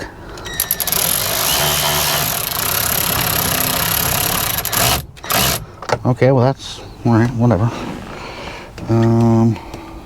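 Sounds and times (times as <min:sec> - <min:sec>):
cordless drill driving a screw: 0:00.6 - 0:05.6.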